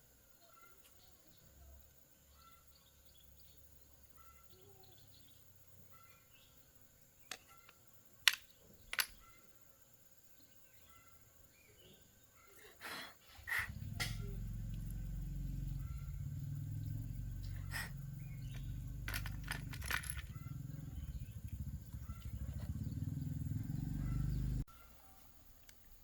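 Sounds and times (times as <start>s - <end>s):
chainsaw engine idling: 13.7s - 24.6s.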